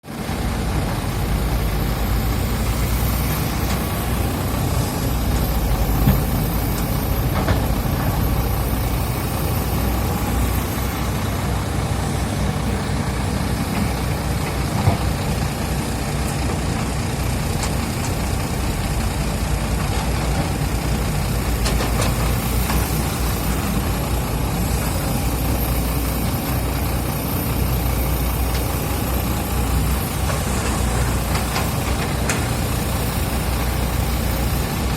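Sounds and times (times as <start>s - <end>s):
excavator diesel engine rumbling: 0.1s - 34.9s.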